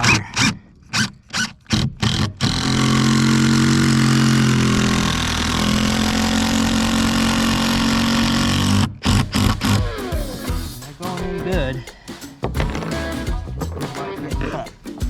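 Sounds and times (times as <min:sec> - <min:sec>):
cordless drill driving screw: 0:00.4 - 0:09.8.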